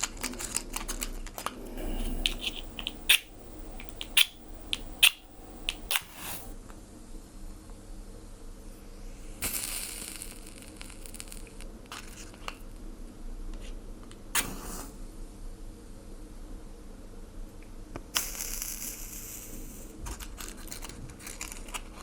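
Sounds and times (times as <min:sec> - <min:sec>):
faint steady hum: 0:00.0 - 0:22.0
fire crackling and hissing: 0:01.7 - 0:06.6.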